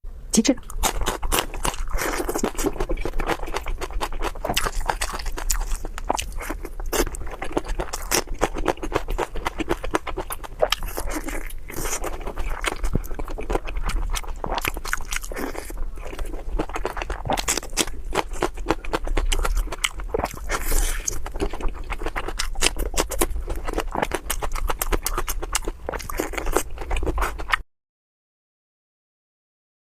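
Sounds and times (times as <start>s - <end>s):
person chewing food: 0.6s - 27.6s.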